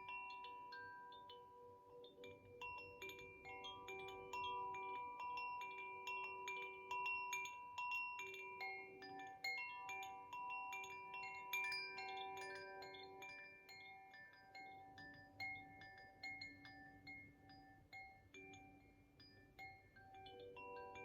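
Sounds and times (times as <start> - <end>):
wind chime rods ringing: 0.0 - 21.0.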